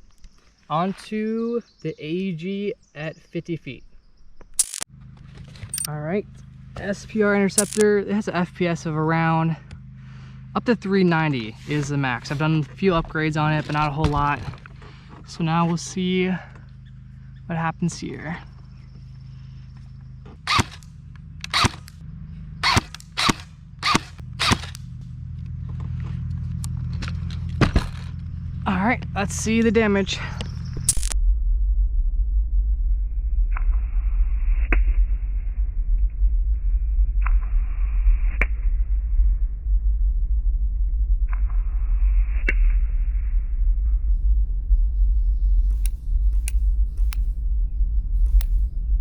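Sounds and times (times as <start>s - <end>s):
steady low hum: 0.0s - 49.0s
low rumble: 4.0s - 49.0s
sharp clicks: 4.4s - 4.9s, 7.6s - 7.9s, 20.5s - 22.0s, 22.6s - 24.9s, 30.4s - 31.2s, 45.6s - 47.4s, 48.2s - 48.7s
airsoft rifle shots: 20.5s - 20.8s, 21.5s - 22.0s, 22.6s - 24.8s.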